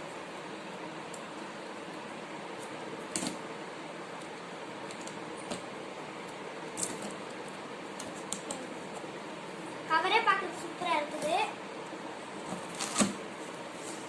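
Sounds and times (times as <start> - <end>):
scissors cutting packaging: 12.6 - 13.2.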